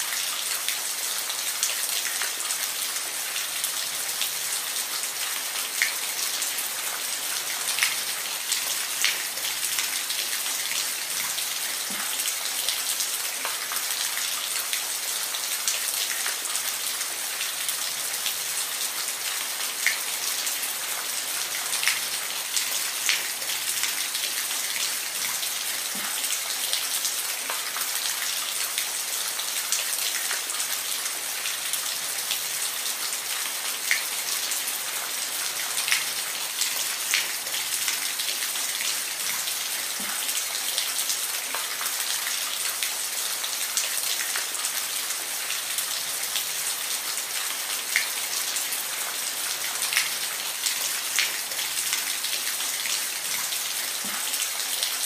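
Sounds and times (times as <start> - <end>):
steady rain: 0.0 - 55.0.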